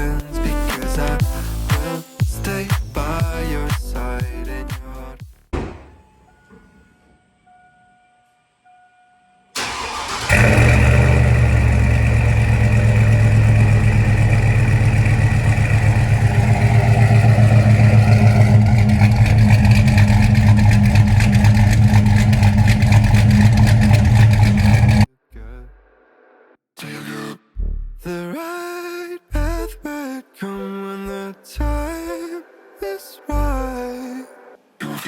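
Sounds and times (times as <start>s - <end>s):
truck engine starting and idling: 9.6s - 25.1s.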